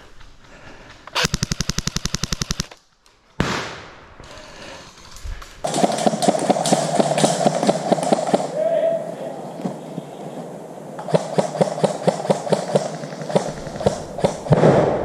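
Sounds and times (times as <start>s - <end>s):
airsoft gun rapid firing: 1.2s - 2.8s, 5.7s - 8.5s, 11.0s - 15.0s.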